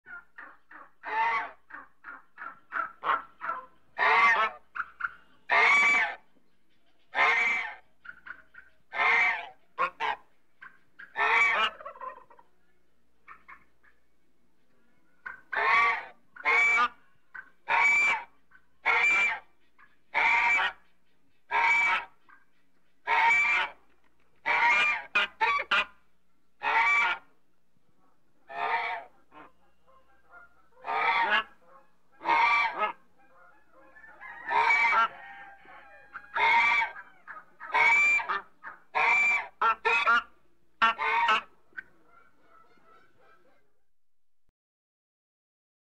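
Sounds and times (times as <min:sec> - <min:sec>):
goose honking: 0:00.1 - 0:06.2, 0:07.1 - 0:12.4, 0:15.2 - 0:19.5, 0:20.1 - 0:20.9, 0:21.5 - 0:22.2, 0:23.0 - 0:23.8, 0:24.4 - 0:26.0, 0:26.6 - 0:27.4, 0:28.5 - 0:43.7
soft low goose calls: 0:26.6 - 0:43.8.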